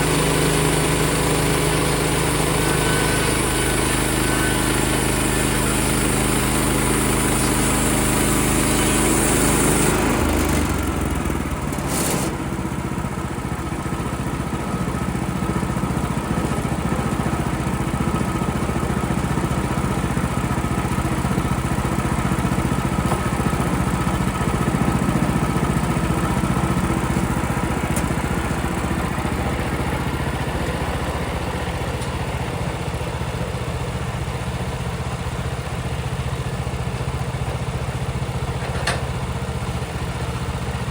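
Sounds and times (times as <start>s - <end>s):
saw blade cutting through log: 0.0s - 12.6s
small gas engine running: 0.0s - 40.9s
brief click: 38.6s - 39.0s.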